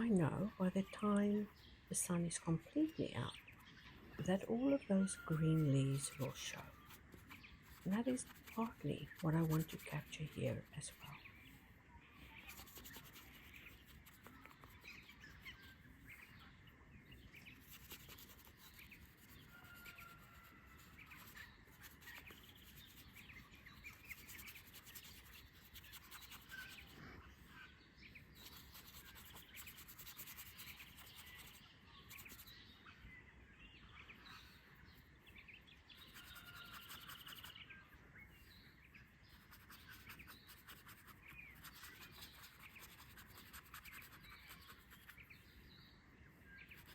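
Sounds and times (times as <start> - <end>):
birds chirping: 0.0 - 46.9
paintbrush scratching on paper: 4.3 - 11.3, 12.3 - 15.6, 17.5 - 27.3, 28.3 - 32.6, 35.9 - 37.7, 39.3 - 45.4, 46.6 - 46.9.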